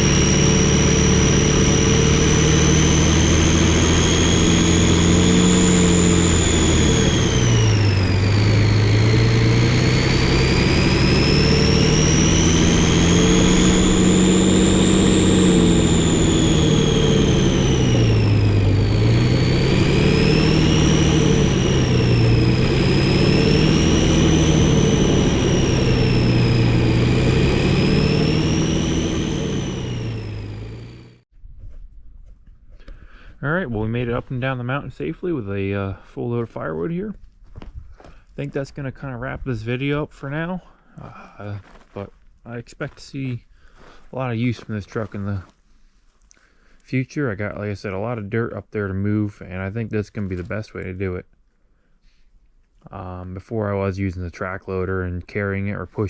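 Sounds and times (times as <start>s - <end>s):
diesel truck engine revving: 0.0s - 31.2s.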